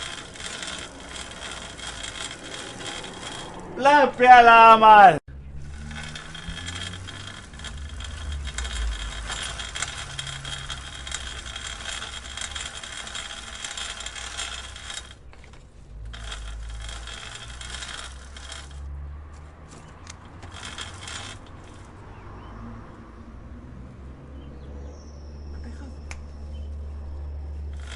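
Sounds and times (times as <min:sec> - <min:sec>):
bicycle chain clicking and rattling: 0:00.0 - 0:04.0, 0:05.4 - 0:22.2, 0:27.5 - 0:27.9.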